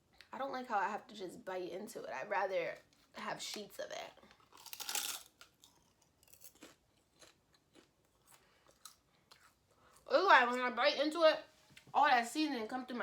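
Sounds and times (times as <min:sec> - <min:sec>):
person chewing crunchy snack: 0:04.2 - 0:10.1.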